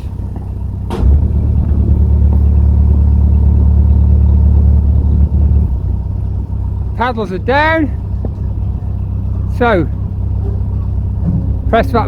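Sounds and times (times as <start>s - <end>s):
boat diesel engine rumbling: 0.0s - 12.0s.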